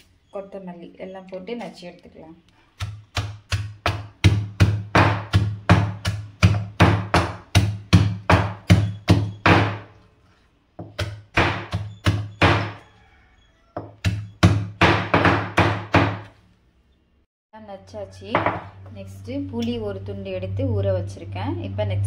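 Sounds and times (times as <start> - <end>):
pestle pounding in stone mortar: 2.8 - 9.9, 10.8 - 12.8, 13.8 - 16.3.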